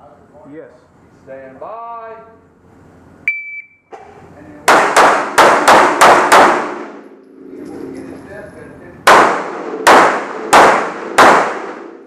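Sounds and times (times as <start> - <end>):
shot timer beep: 3.3 - 3.9
pistol firing rapid shots: 4.7 - 6.8, 9.1 - 12.0.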